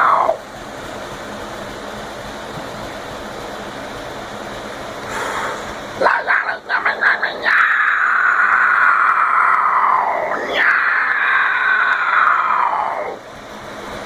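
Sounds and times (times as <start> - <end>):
screamed and growled metal vocals: 0.0 - 0.4, 6.0 - 13.2
steady noisy wash: 0.0 - 14.0.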